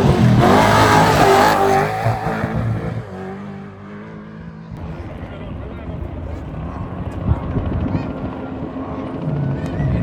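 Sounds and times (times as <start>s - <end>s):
off-road vehicle engine revving past: 0.0s - 4.8s.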